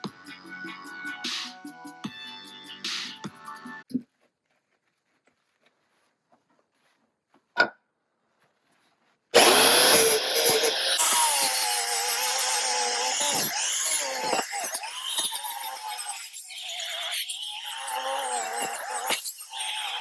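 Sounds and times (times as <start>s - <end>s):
angle grinder grinding steel: 9.4s - 20.0s.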